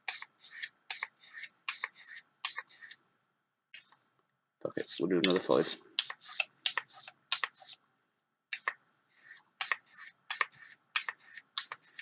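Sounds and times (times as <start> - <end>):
knife scraping on ceramic sharpener: 0.0 - 3.0, 4.8 - 7.8, 8.6 - 12.0.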